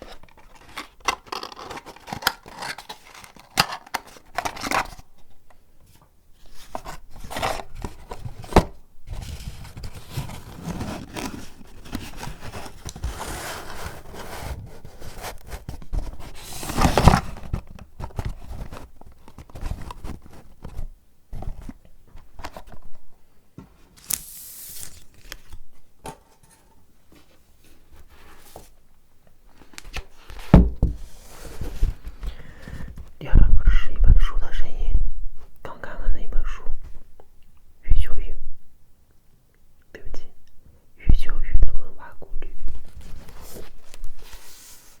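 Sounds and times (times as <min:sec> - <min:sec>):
paper tearing and crinkling: 0:00.0 - 0:05.0, 0:24.0 - 0:25.6.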